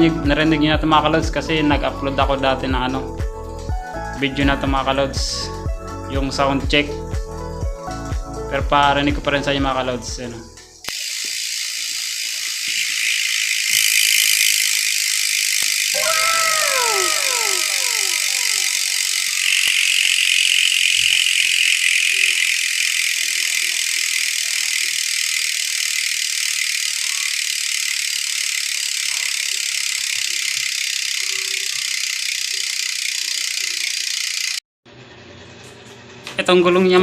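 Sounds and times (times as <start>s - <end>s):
bicycle hub freewheel clicking: 10.8s - 34.6s.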